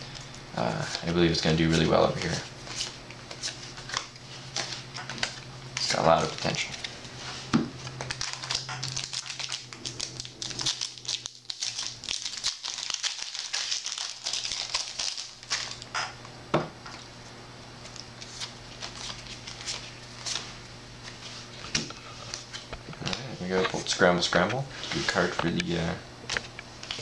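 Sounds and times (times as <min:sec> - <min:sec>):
low steady hum: 0:00.0 - 0:27.0
trading cards being handled: 0:00.2 - 0:15.9, 0:17.8 - 0:24.0
foil wrapper crinkling: 0:07.9 - 0:15.9, 0:17.9 - 0:20.5.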